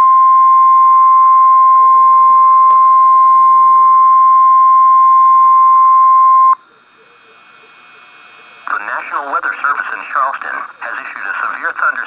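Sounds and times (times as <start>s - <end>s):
faint radio hiss: 6.5s - 12.0s.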